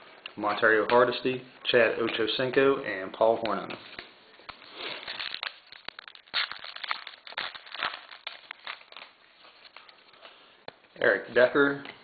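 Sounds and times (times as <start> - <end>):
cards being handled: 3.3 - 10.9
wrapper crinkling and tearing: 4.5 - 10.3.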